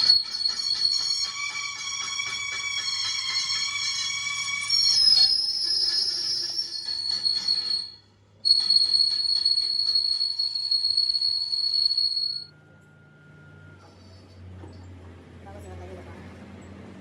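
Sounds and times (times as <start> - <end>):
high-pitched metal squeal: 0.0 - 12.5.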